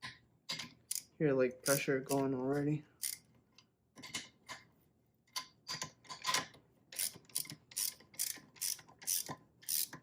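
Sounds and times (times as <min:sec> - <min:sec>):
ratchet wrench clicking: 0:00.6 - 0:01.9, 0:03.0 - 0:03.3, 0:07.0 - 0:10.0.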